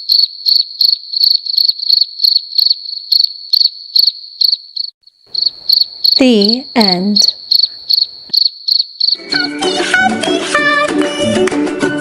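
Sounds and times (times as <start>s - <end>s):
crickets chirping: 0.0s - 9.2s.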